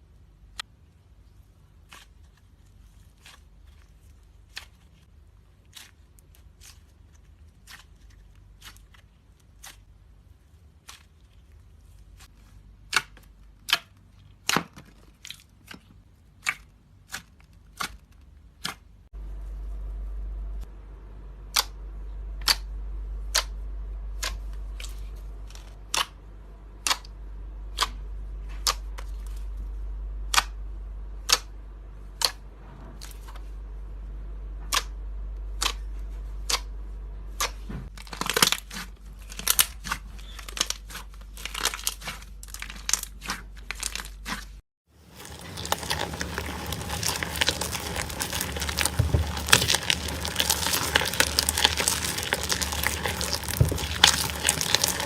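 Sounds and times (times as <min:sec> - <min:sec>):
foam slime popping and crackling: 0:37.4 - 0:55.0.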